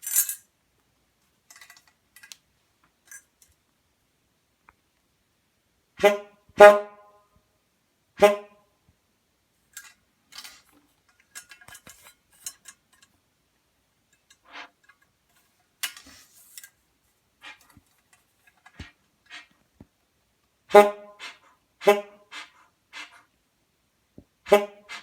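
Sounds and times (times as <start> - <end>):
brass car horn honk: 6.0 - 7.2, 8.2 - 8.6, 20.7 - 21.2, 21.8 - 22.2, 24.5 - 24.9.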